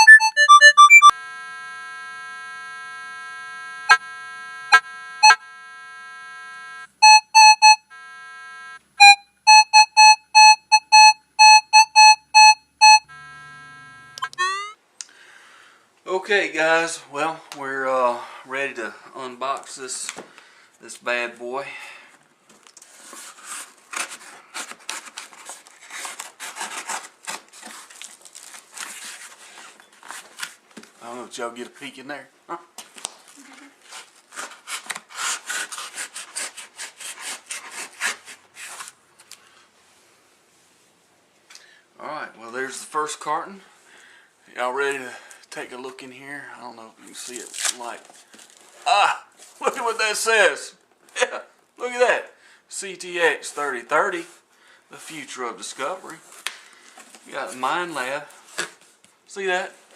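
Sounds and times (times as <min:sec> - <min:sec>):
electronic synthesizer jingle: 0:00.0 - 0:01.1, 0:12.0 - 0:14.8
cardboard and tape scraping: 0:22.8 - 0:30.6, 0:33.1 - 0:39.3.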